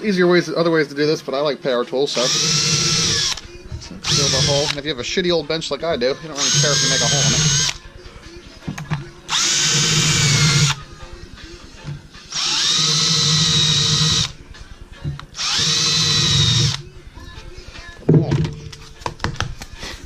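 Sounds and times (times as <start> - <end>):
electric drill whining: 2.2 - 5.4, 6.0 - 18.0.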